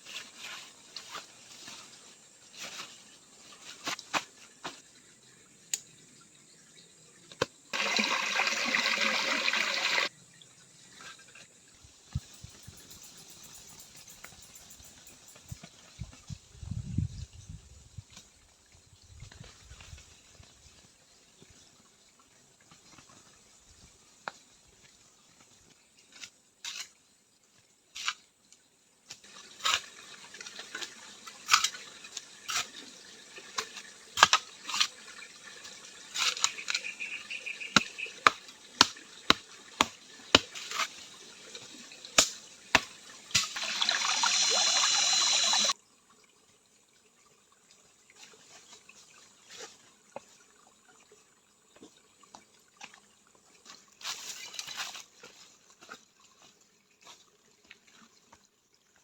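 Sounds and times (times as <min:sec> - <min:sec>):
water trickling and dripping: 0:00.0 - 0:27.8, 0:28.4 - 0:59.0
rush of water: 0:07.7 - 0:10.1, 0:29.3 - 0:45.8.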